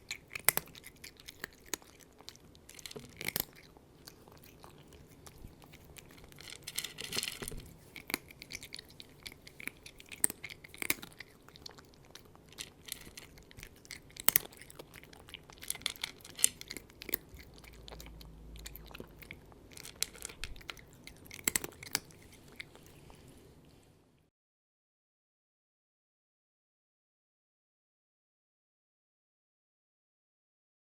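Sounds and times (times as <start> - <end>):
cat crunching food: 0.0 - 23.9.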